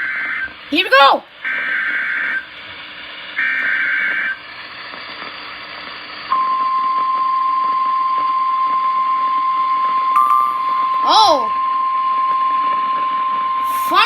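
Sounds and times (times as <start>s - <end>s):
steady warning alarm tone: 0.0s - 2.6s, 3.3s - 4.4s, 6.3s - 14.0s
radio hiss: 1.5s - 6.3s, 13.6s - 14.0s
data burst tones: 3.2s - 14.0s.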